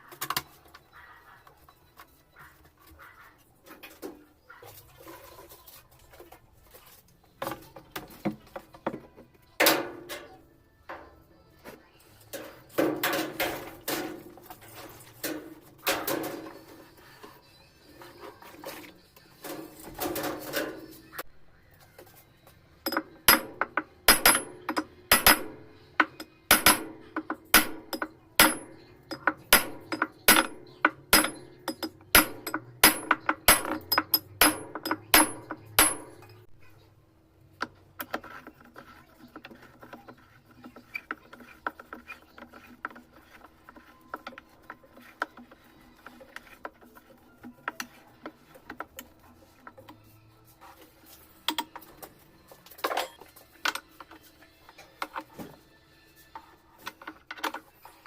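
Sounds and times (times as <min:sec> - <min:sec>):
sharp metallic knocks: 0:22.9 - 0:36.4.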